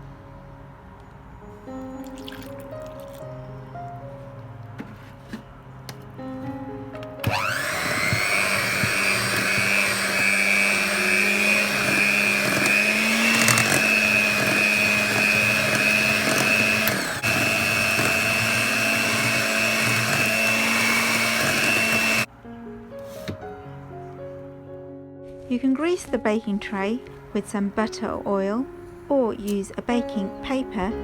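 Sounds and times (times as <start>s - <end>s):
electric mixer motor whining: 7.2s - 22.3s.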